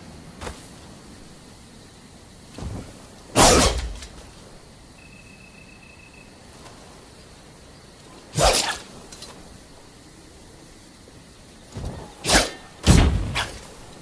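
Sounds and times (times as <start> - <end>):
sword swing whoosh: 12.2 - 12.6.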